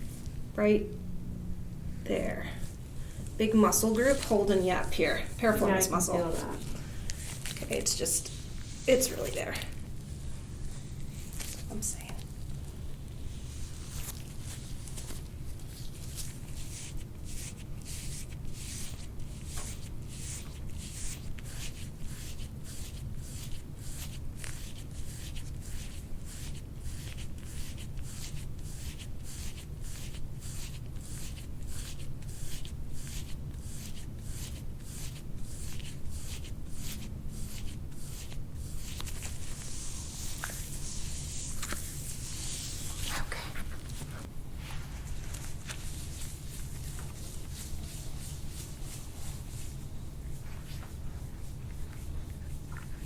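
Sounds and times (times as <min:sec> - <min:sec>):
steady low hum: 0:00.0 - 0:53.0
hands rubbing skin: 0:13.3 - 0:53.0.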